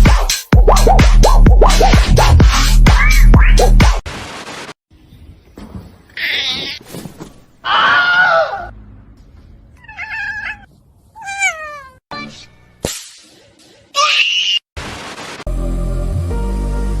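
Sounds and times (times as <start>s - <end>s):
cat meowing: 9.8s - 12.0s.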